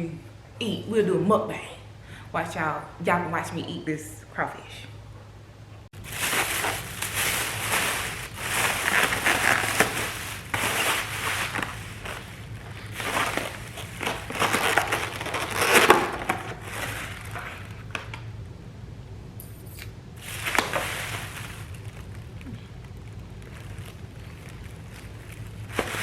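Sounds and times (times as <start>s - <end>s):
crunching and crinkling: 6.0s - 18.2s, 20.2s - 26.0s.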